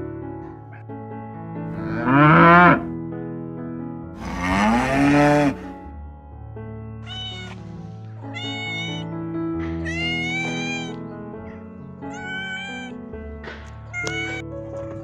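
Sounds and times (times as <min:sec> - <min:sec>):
background music: 0:00.0 - 0:15.0
cat meowing: 0:07.0 - 0:09.1, 0:09.8 - 0:11.0, 0:12.0 - 0:13.0, 0:13.9 - 0:14.4.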